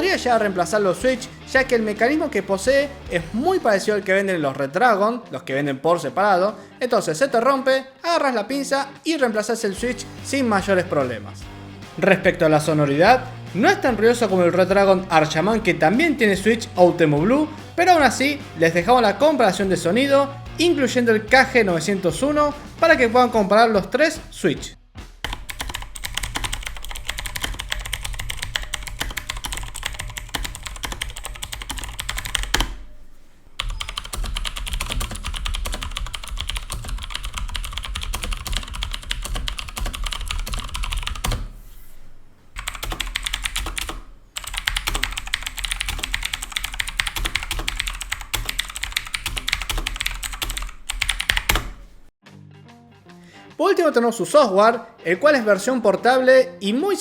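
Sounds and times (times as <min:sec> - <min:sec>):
fast typing on mechanical keyboard: 0:25.3 - 0:32.8, 0:33.6 - 0:41.5, 0:42.6 - 0:51.8.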